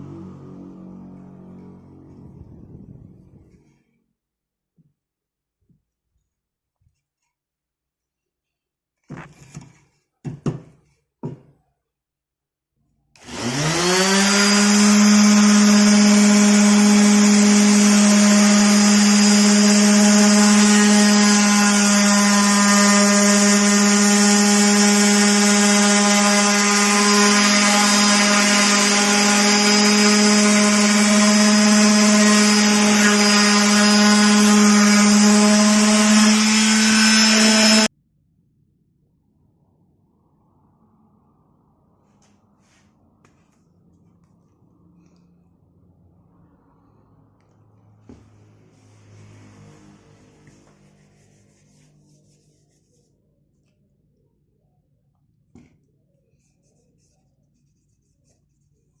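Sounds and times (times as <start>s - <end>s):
bit cutting wood: 13.2s - 37.9s
router spindle whine: 13.2s - 37.9s.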